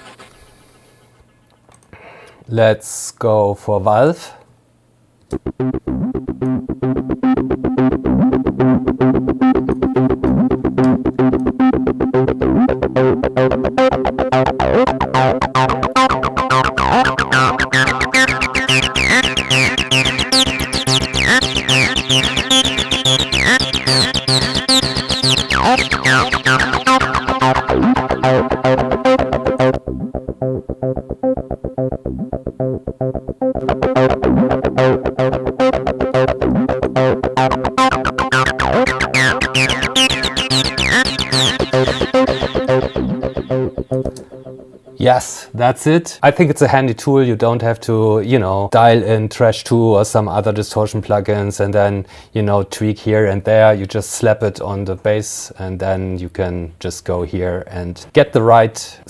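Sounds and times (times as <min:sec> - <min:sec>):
distorted acid bass line: 0:05.3 - 0:45.0
steady beat: 0:05.4 - 0:45.4
gliding high tones: 0:05.6 - 0:45.3.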